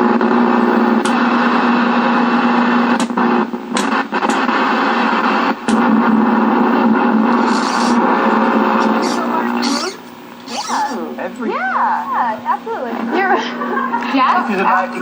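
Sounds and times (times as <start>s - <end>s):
television static hiss: 0.0s - 15.0s
low buzz: 7.2s - 11.1s.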